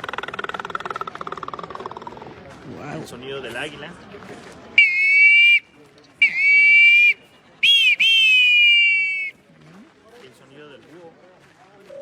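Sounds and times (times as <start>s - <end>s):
shrill whistle calls: 4.8s - 9.4s.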